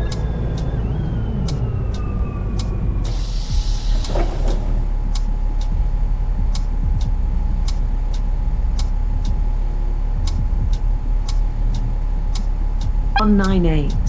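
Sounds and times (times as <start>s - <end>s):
bus engine and road noise: 0.0s - 14.0s
sharp regular ticks: 10.3s - 13.6s.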